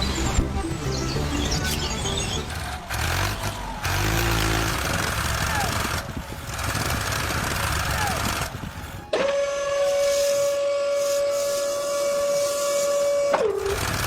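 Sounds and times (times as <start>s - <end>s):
long whistle blast: 9.1s - 13.8s.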